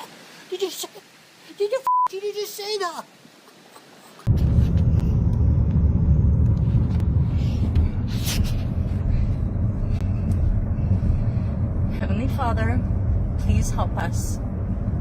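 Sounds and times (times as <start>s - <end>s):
storm wind rumble: 4.3s - 15.0s.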